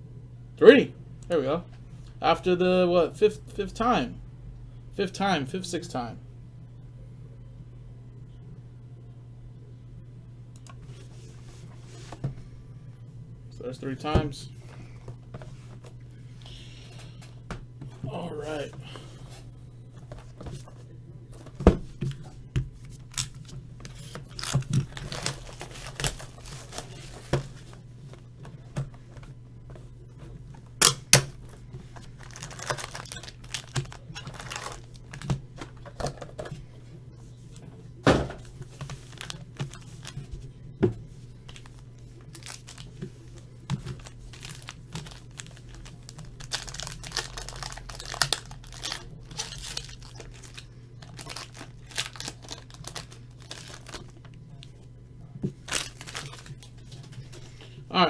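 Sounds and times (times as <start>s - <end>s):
steady low hum: 0.0s - 58.0s
wrapping and cardboard tearing: 22.9s - 27.6s, 32.0s - 35.3s, 42.3s - 43.0s, 43.8s - 54.2s, 55.6s - 56.6s.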